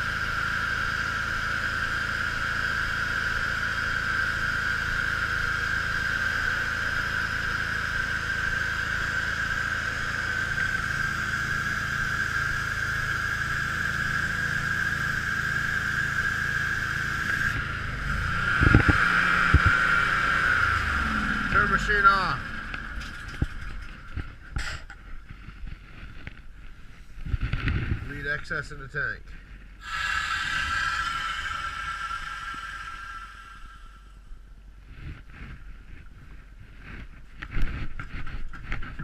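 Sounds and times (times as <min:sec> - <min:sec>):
pressure washer running: 0:00.0 - 0:24.9, 0:29.8 - 0:34.1.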